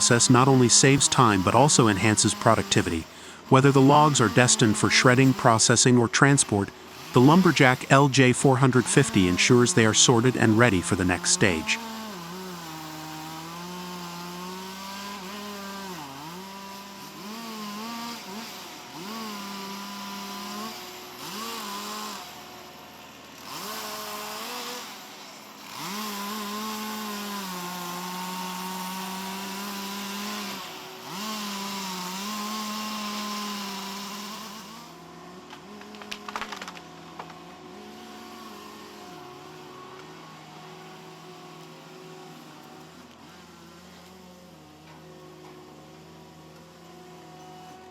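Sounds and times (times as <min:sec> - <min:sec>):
harsh saw cutting: 0:00.0 - 0:36.0
tree-cutting machine motor: 0:00.0 - 0:47.9.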